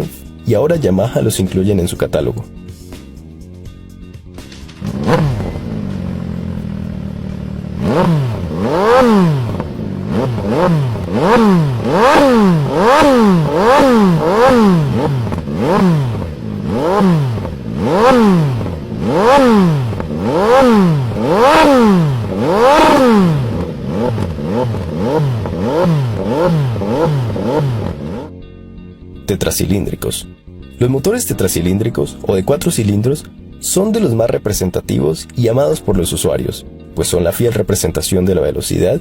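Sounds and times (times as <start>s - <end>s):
motorcycle engine idling and revving: 2.9s - 28.6s.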